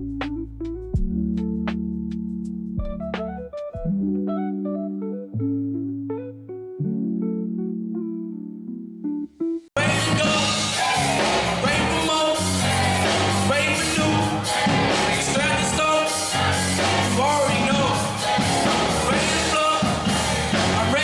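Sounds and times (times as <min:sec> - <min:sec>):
upbeat song with vocals: 0:09.8 - 0:21.0.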